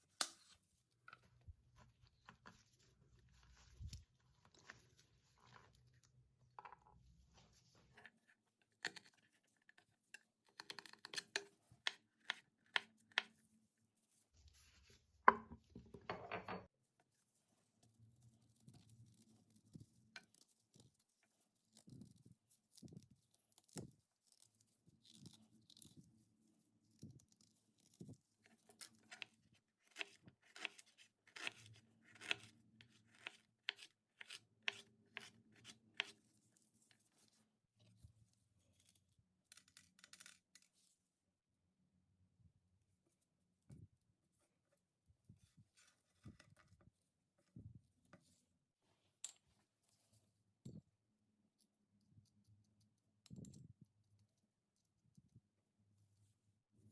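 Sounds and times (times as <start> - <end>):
ingredients being peeled: 18.0 - 37.5.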